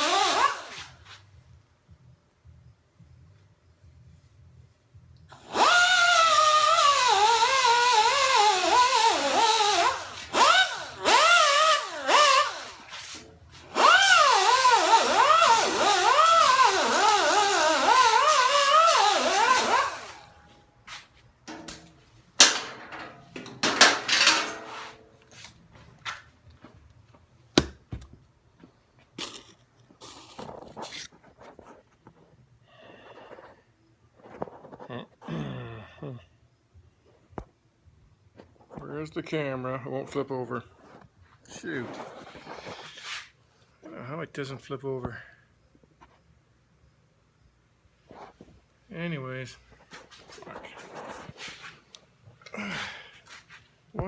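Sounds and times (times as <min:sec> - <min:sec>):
angle grinder grinding steel: 0:00.0 - 0:00.9, 0:05.4 - 0:20.3
clicks and knocks: 0:21.5 - 0:25.0.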